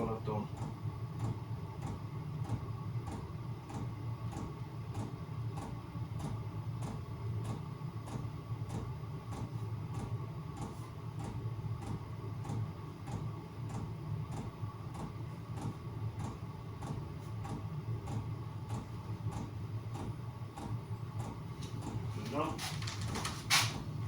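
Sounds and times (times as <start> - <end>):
heater blower humming: 21.2 - 24.0.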